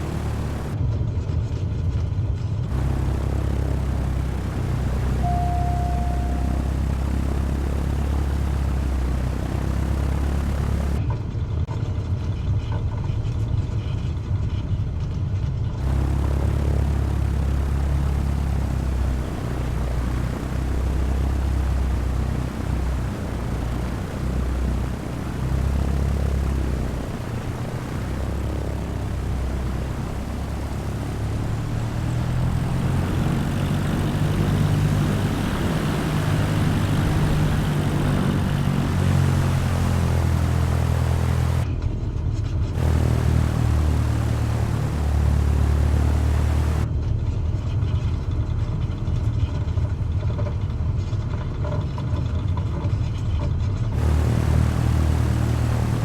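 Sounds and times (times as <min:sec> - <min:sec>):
plane engine and propeller droning: 0:00.0 - 0:00.8, 0:02.7 - 0:11.0, 0:15.8 - 0:41.8, 0:42.7 - 0:46.9, 0:54.0 - 0:56.0.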